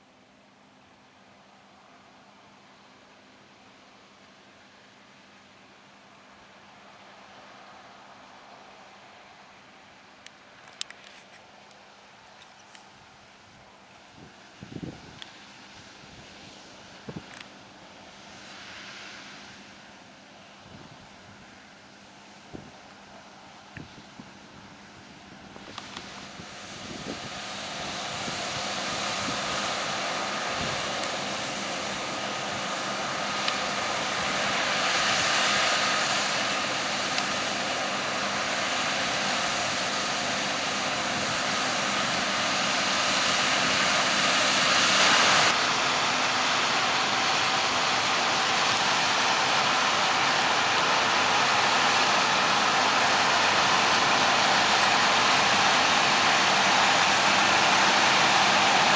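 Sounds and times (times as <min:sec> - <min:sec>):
heavy machinery droning: 0:25.8 - 0:58.9.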